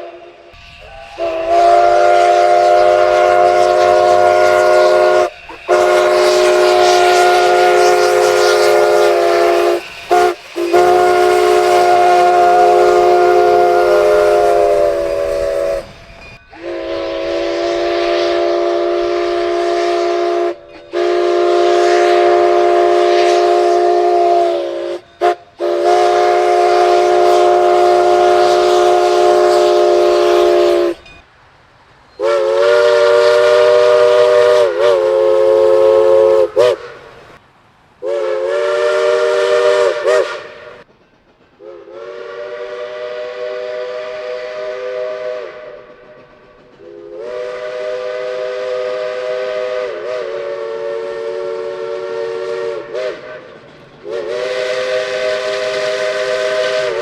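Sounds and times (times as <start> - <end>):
steam locomotive whistle: 0.0 - 31.3, 32.1 - 37.4, 38.0 - 40.9, 41.6 - 57.0.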